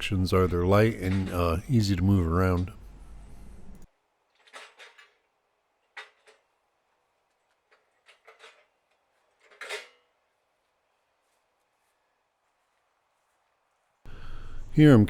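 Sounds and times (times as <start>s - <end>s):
metal track clanking and rattling: 0.0s - 3.8s.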